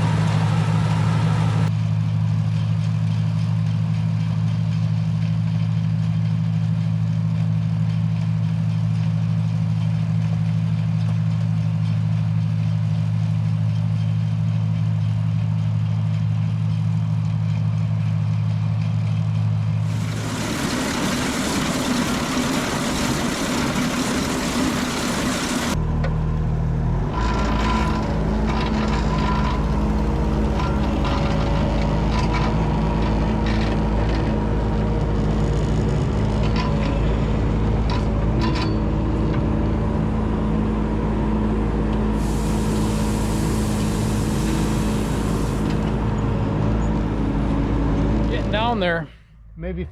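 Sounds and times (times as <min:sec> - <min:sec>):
tractor engine running: 0:00.0 - 0:49.9
machinery humming: 0:19.8 - 0:27.0, 0:42.2 - 0:46.6.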